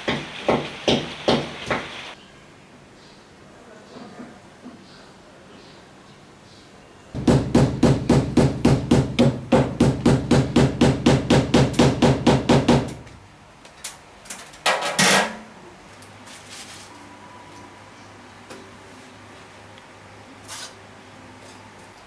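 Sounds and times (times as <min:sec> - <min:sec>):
rapid hammering: 0:00.0 - 0:02.1, 0:07.2 - 0:13.0.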